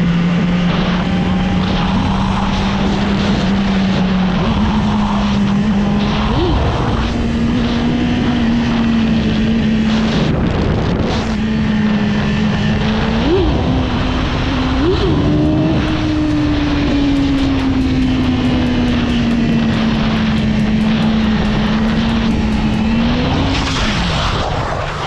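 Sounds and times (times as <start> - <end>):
motorcycle engine running: 0.0 - 25.0
wind rushing over microphone: 0.0 - 25.0.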